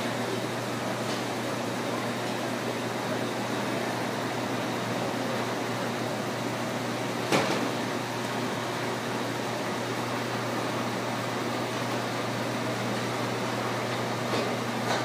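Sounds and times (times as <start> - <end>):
washing machine humming: 0.0 - 15.0.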